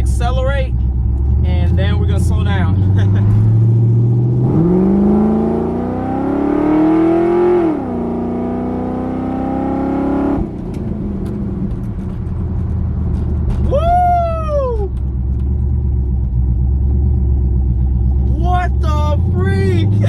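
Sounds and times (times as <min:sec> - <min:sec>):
car engine accelerating hard: 0:00.8 - 0:20.0
man shouting: 0:13.7 - 0:14.9, 0:18.3 - 0:20.0.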